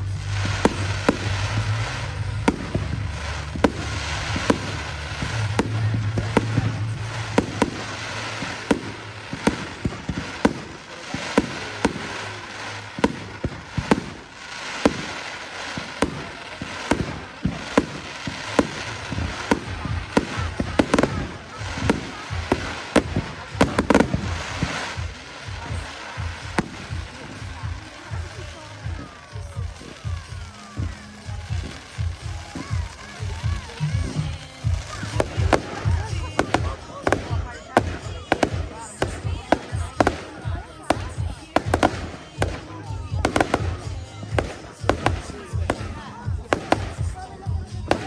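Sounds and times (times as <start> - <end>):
crackling haze: 0.0 - 48.0
fireworks bangs and pops: 0.0 - 48.0.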